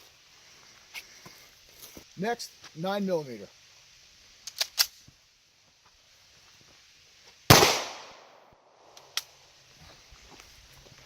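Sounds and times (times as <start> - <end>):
gunshot: 7.5 - 8.5.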